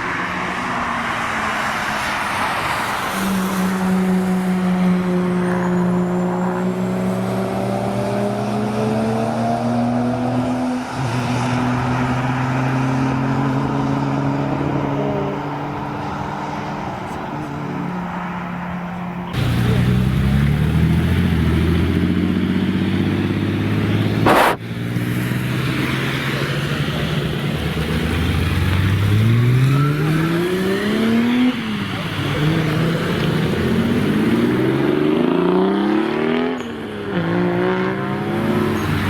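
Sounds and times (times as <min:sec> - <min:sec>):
car engine revving: 0:00.0 - 0:39.0
sharp crack: 0:24.2 - 0:24.6.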